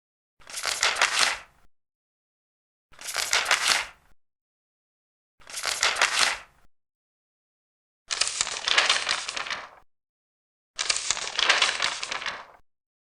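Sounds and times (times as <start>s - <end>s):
paper pages rustling: 0.4s - 1.5s, 3.0s - 4.0s, 5.4s - 6.5s, 8.1s - 9.8s, 10.8s - 12.6s.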